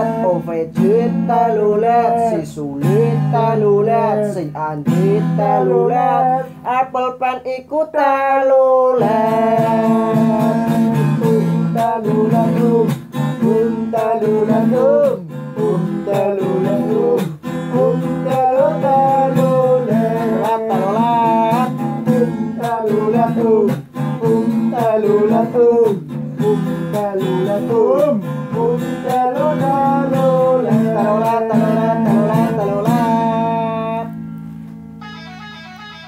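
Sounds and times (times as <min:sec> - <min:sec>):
strummed acoustic guitar: 0:00.0 - 0:36.0.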